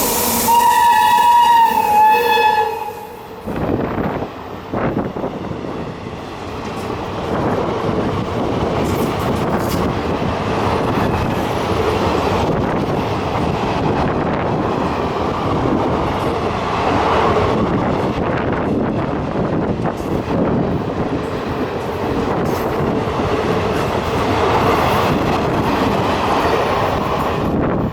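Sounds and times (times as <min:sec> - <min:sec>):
sharp train clanks: 0:00.0 - 0:27.9
train wheels rushing on rail: 0:00.0 - 0:27.9.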